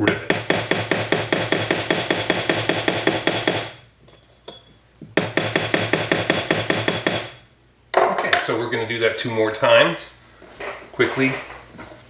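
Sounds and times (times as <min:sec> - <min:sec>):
small hammer tapping on metal: 0:00.0 - 0:07.4.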